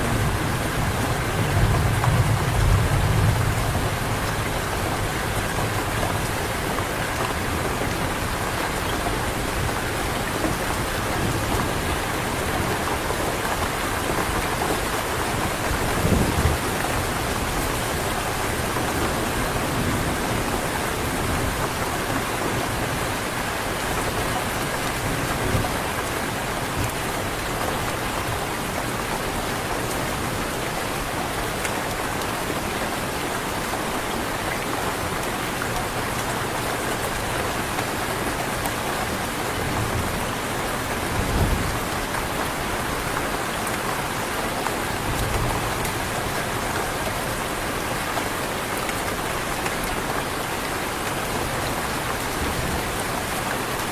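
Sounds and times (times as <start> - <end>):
heavy rain falling: 0.0 - 53.9.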